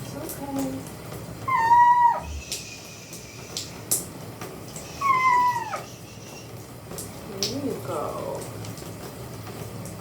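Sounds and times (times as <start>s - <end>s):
cat meowing: 1.5s - 2.4s, 5.0s - 5.9s.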